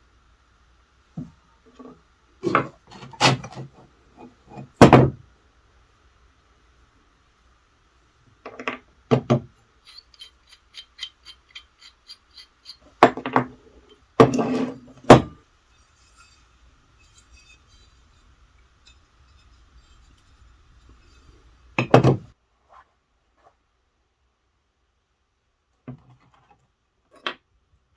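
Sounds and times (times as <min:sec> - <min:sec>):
tools knocking and clinking: 0:08.6 - 0:15.4
light evenly spaced ticks: 0:09.8 - 0:12.9
scraping handling sound: 0:09.8 - 0:23.6.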